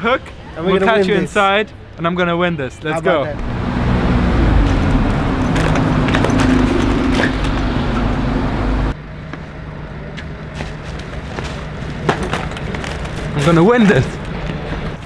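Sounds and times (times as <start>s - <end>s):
road traffic noise: 0.0s - 15.0s
low hum: 3.3s - 13.3s
vehicle engine running nearby: 3.3s - 15.0s.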